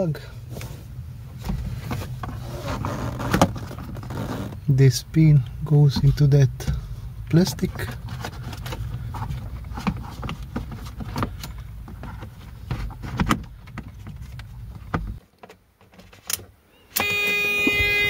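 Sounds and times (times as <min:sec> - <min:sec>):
steady low rumble: 0:03.5 - 0:15.2.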